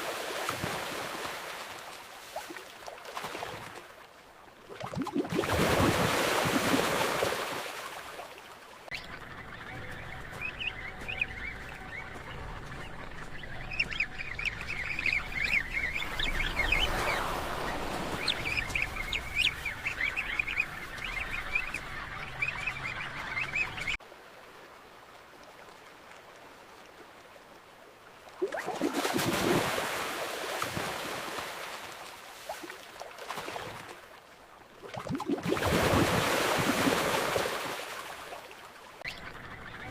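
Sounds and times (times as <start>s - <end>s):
water washing: 11.0s - 21.2s
wave washing in: 15.5s - 20.1s.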